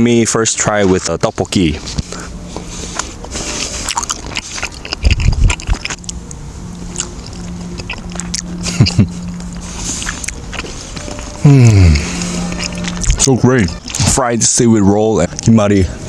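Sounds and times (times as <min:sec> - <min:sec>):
steady low hum: 0:00.0 - 0:16.0
person chewing food: 0:01.8 - 0:14.2
wet mouth clicks: 0:03.9 - 0:06.3.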